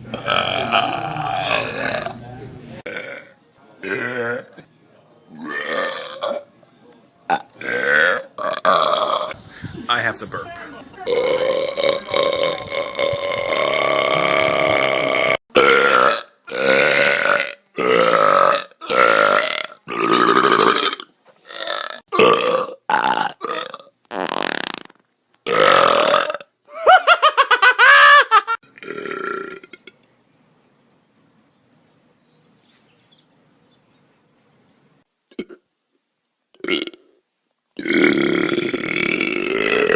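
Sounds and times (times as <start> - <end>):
loud burping: 0.0 - 2.2, 2.8 - 4.7, 5.3 - 6.5, 7.3 - 9.4, 11.0 - 26.5, 28.6 - 30.0, 35.3 - 35.6, 36.6 - 37.2, 37.8 - 39.9.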